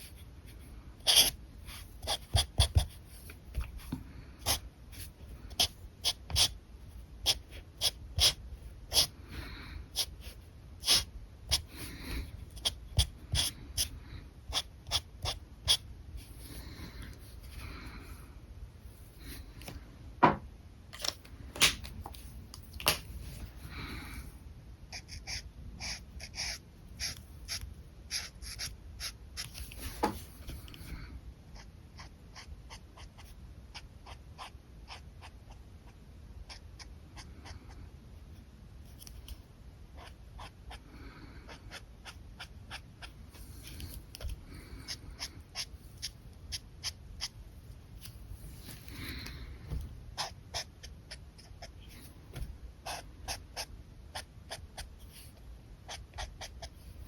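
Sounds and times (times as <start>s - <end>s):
marker rubbing on paper: 1.0s - 3.8s, 4.4s - 6.6s, 7.3s - 9.1s, 10.0s - 11.7s.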